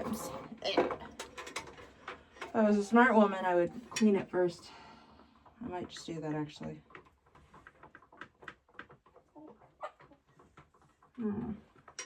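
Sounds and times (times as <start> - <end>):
chickens clucking: 0.0 - 4.4, 8.8 - 11.1.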